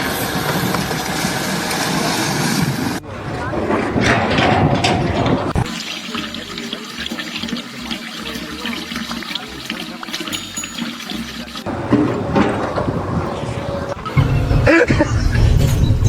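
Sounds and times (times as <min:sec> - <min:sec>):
water rushing: 0:05.5 - 0:12.2.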